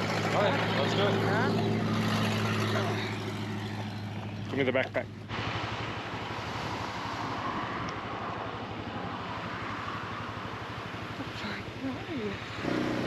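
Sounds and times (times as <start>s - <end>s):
motorbike engine running: 0.0s - 5.3s, 10.4s - 13.0s
wind rushing over microphone: 5.3s - 13.0s.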